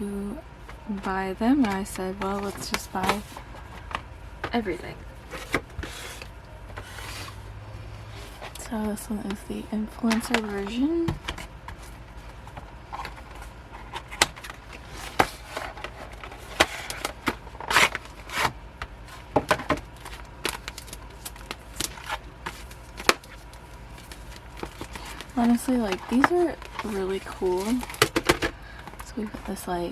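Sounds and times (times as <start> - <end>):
packaging rustling: 0.6 - 7.5, 10.0 - 29.9
packaging clicks and taps: 10.0 - 11.8, 19.4 - 29.6.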